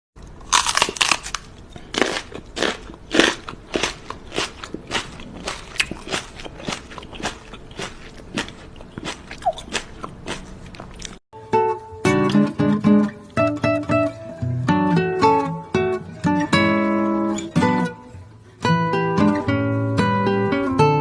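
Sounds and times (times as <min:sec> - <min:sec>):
crisp crunchy chewing: 0:00.2 - 0:11.2.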